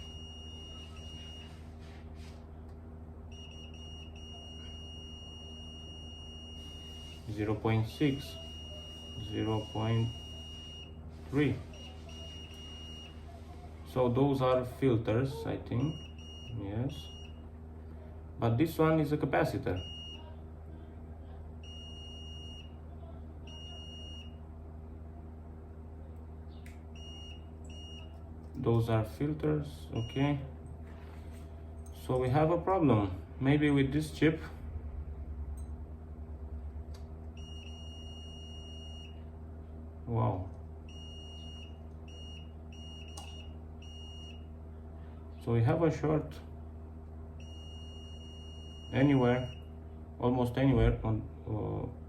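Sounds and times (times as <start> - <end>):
multimeter continuity beep: 0.0 - 1.6, 3.3 - 11.0, 11.7 - 13.2, 15.8 - 17.4, 19.7 - 20.3, 21.6 - 22.8, 23.5 - 24.4, 26.9 - 28.2, 29.9 - 30.5, 37.4 - 39.2, 40.8 - 44.5, 47.4 - 49.7.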